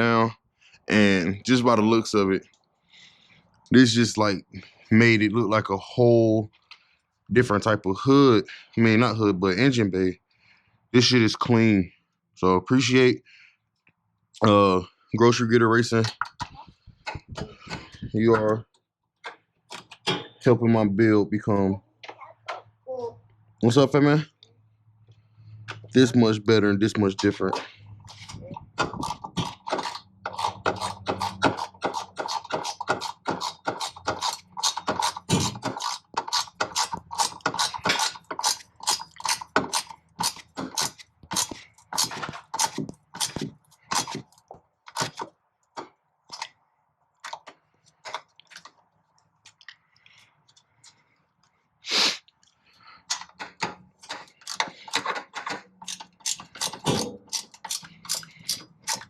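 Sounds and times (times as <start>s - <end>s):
socket ratchet clicking: 54.1s - 59.0s.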